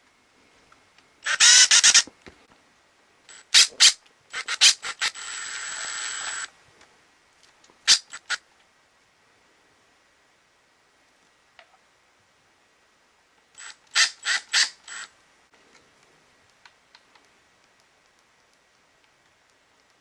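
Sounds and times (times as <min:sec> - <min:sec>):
impact driver motor spinning: 0:01.3 - 0:02.1, 0:03.3 - 0:06.5, 0:07.9 - 0:08.4, 0:13.6 - 0:15.1.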